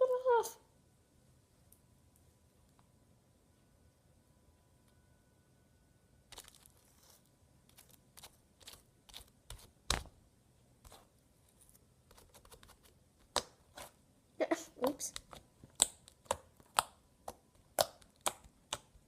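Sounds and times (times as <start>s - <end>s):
slime crackling and popping: 6.3s - 7.1s, 14.8s - 19.0s.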